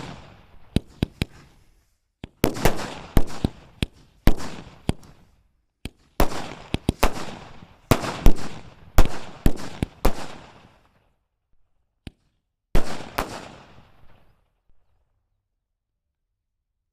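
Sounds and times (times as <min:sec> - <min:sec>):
fireworks bangs with echo: 0:00.0 - 0:01.6, 0:02.2 - 0:11.0, 0:12.8 - 0:14.3.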